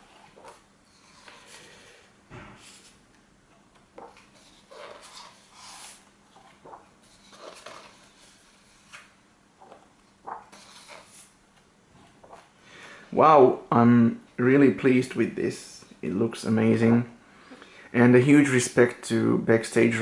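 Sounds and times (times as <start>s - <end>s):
paper and cardboard rustling: 4.0s - 11.3s.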